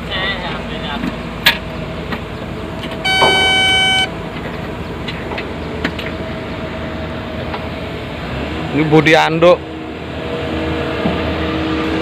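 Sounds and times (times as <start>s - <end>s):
excavator engines running: 0.0s - 9.4s
horn steady high tone: 3.0s - 4.1s.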